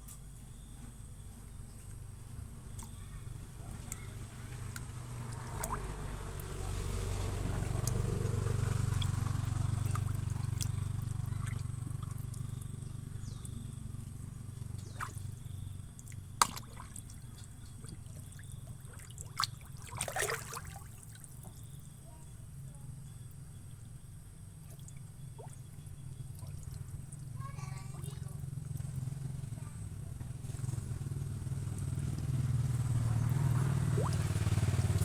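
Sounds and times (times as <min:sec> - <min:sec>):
small sharp splashes: 0:02.7 - 0:13.7, 0:14.6 - 0:21.8, 0:24.6 - 0:35.0
water dripping: 0:03.7 - 0:21.7, 0:24.6 - 0:29.4, 0:30.2 - 0:35.0.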